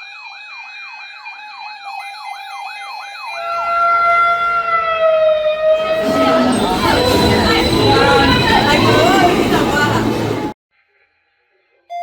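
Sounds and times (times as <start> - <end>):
siren yelping and wailing: 3.4 - 10.2.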